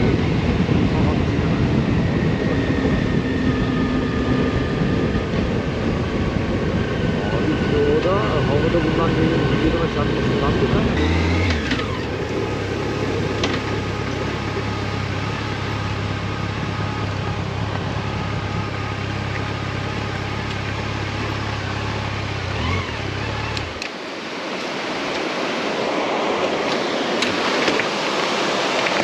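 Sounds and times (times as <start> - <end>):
wind rush on microphone: 0.0 - 19.6, 22.2 - 29.0
motorcycle engine running: 0.0 - 23.9.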